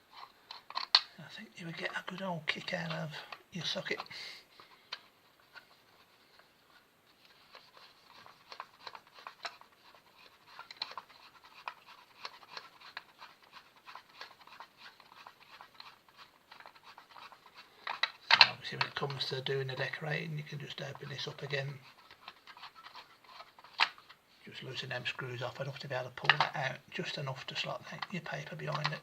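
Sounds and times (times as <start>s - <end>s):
screwdriver clicks and scrapes: 0.1s - 1.1s.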